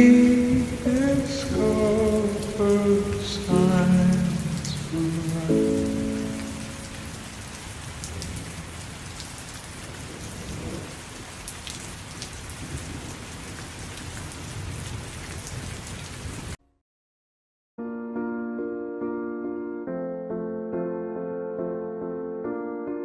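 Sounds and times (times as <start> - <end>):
steady rain falling: 0.0 - 16.6.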